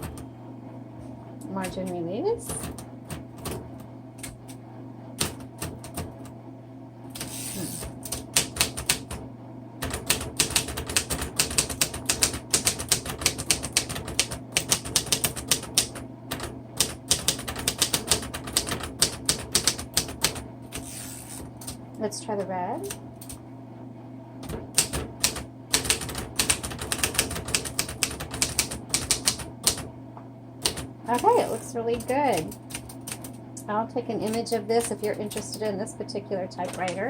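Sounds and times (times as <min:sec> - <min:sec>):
steady low hum: 0:00.0 - 0:37.0
typewriter keys striking: 0:07.2 - 0:09.2, 0:09.8 - 0:20.4, 0:24.4 - 0:29.8, 0:34.2 - 0:35.7, 0:36.6 - 0:37.0.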